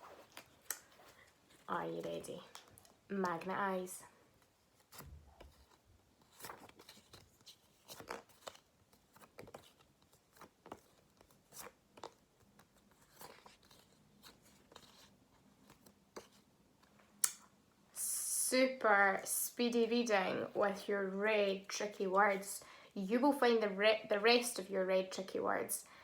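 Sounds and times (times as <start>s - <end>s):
paper cards rustling: 0.0s - 17.4s.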